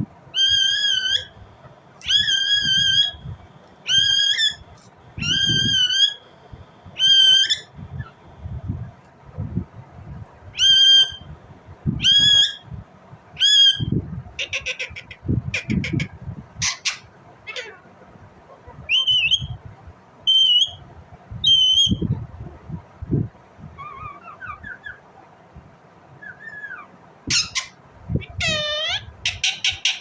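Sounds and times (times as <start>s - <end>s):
parakeet harsh squawk: 0.4s - 1.3s, 2.0s - 3.2s, 3.9s - 4.6s, 5.2s - 6.2s, 7.0s - 8.1s, 10.6s - 11.2s, 14.4s - 17.8s, 26.2s - 30.0s
parakeet piercing calls: 0.4s - 1.4s, 2.0s - 6.3s, 7.0s - 8.2s, 10.6s - 11.2s, 12.0s - 12.6s, 13.4s - 17.8s, 23.8s - 25.0s, 26.2s - 30.0s
parakeet soft chirps: 26.2s - 30.0s.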